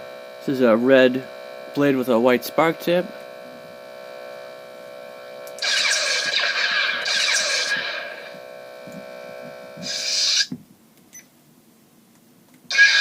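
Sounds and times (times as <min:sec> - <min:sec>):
electronic blade hum with sweeps: 0:00.1 - 0:10.5, 0:12.7 - 0:13.0
short electronic burst: 0:05.6 - 0:08.4, 0:12.7 - 0:13.0
lightsaber ignition sound: 0:05.6 - 0:08.5, 0:09.8 - 0:10.5, 0:12.7 - 0:13.0.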